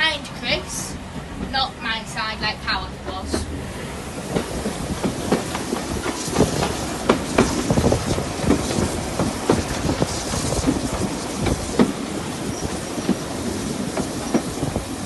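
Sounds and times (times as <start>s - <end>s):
train rumble: 0.0s - 15.0s
train wheels clicking over rail joints: 3.0s - 15.0s.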